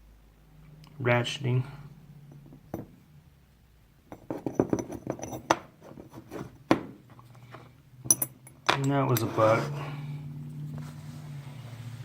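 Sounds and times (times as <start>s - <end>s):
metal hand tools clinking: 8.1s - 9.7s.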